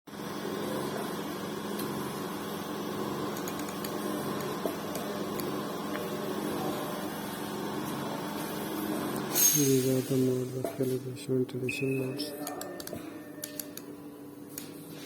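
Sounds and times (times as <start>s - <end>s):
ventilator machine hum: 0.1s - 15.0s.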